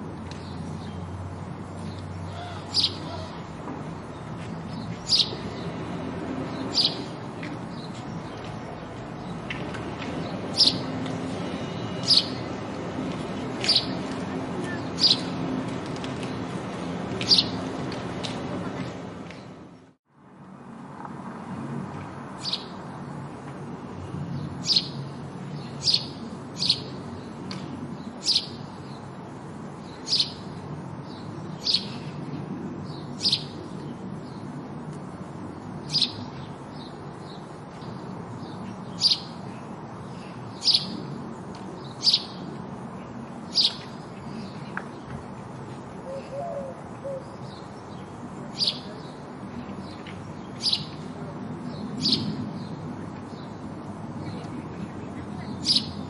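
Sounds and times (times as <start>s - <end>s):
sparrow chirping: 1.8s - 3.3s, 4.1s - 5.8s, 6.5s - 8.5s, 10.2s - 12.6s, 13.6s - 14.0s, 14.6s - 15.5s, 17.2s - 17.6s, 22.4s - 22.8s, 24.3s - 29.1s, 29.8s - 32.1s, 32.9s - 34.5s, 35.8s - 41.2s, 41.8s - 42.5s, 43.5s - 44.6s, 46.1s - 49.2s, 49.8s - 51.1s, 51.7s - 53.6s, 55.2s - 56.0s.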